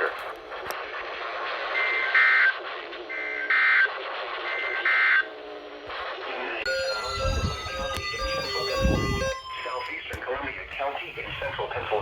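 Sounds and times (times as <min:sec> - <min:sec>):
warbling digital data tones: 0:06.7 - 0:11.1.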